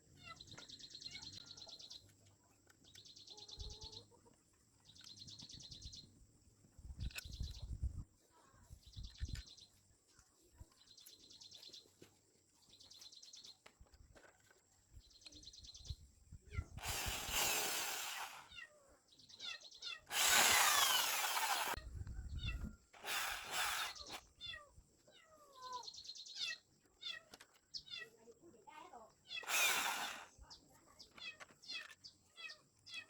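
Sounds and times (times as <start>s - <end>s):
birds chirping: 0.0s - 9.8s, 14.9s - 24.6s, 25.6s - 33.0s
power tool running: 16.8s - 18.5s, 20.1s - 21.8s, 23.0s - 24.2s, 29.4s - 30.3s.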